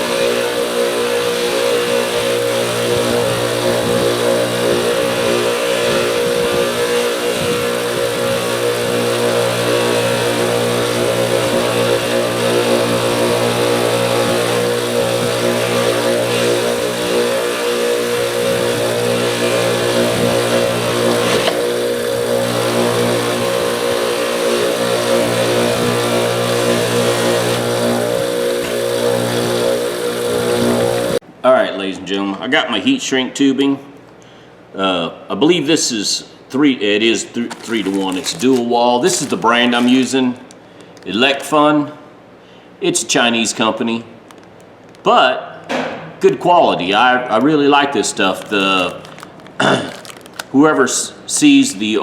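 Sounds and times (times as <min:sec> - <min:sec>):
bench grinder motor running: 0:00.0 - 0:31.2, 0:37.5 - 0:41.2, 0:48.1 - 0:50.6
grinding wheel on steel: 0:00.0 - 0:31.2.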